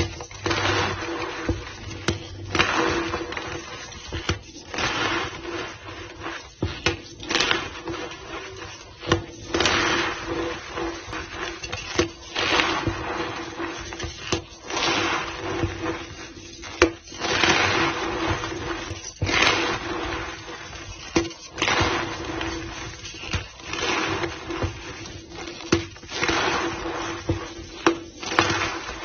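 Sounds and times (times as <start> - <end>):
chalk powder squeaking and crunching: 0.0 - 29.0.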